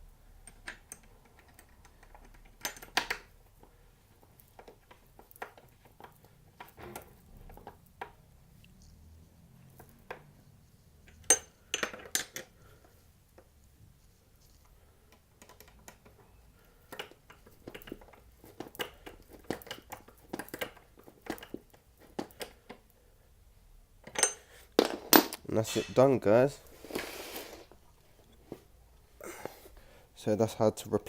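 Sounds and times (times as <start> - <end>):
metal hardware clicking: 0.4 - 3.4.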